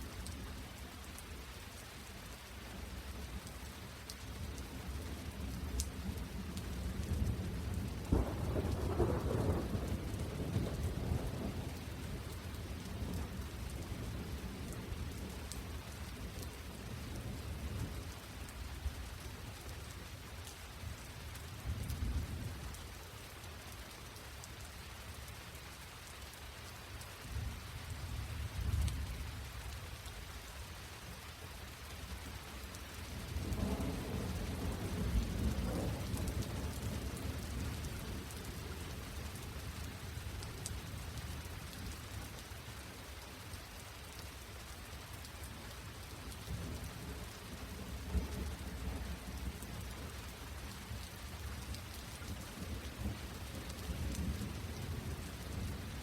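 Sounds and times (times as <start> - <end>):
steady rain falling: 0.0 - 56.0
thunder rumbling: 8.0 - 11.8, 33.4 - 38.5.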